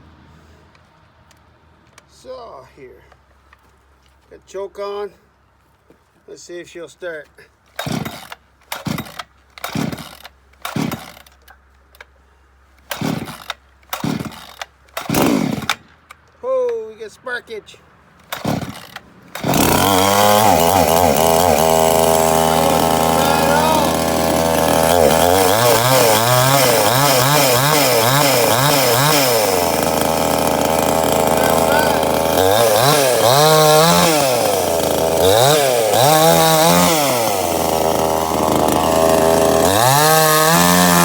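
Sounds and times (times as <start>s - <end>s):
chainsaw engine turning over: 7.7s - 12.1s, 12.8s - 16.3s, 18.2s - 41.0s
starter cord pulls: 7.7s - 12.1s, 12.8s - 16.2s, 18.2s - 35.4s.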